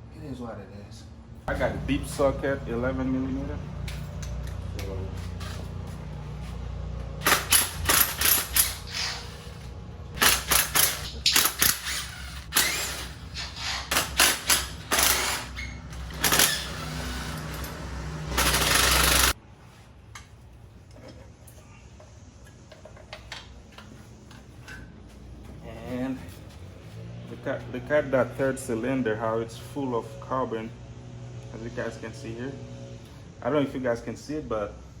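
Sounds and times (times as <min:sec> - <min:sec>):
socket wrench clicking and rattling: 0:07.2 - 0:08.9, 0:10.2 - 0:12.8.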